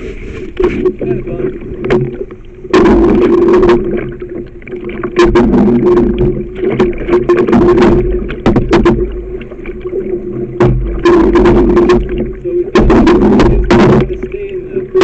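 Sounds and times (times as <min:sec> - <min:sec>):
water splashing against canoe hull: 0:00.0 - 0:15.0
sharp knocks: 0:01.8 - 0:04.1, 0:05.1 - 0:09.2, 0:10.6 - 0:14.4.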